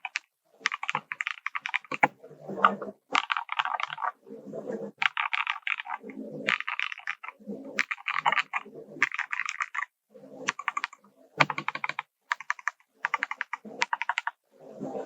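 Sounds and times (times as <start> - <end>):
mechanical keyboard key clacks: 10.5 - 14.3.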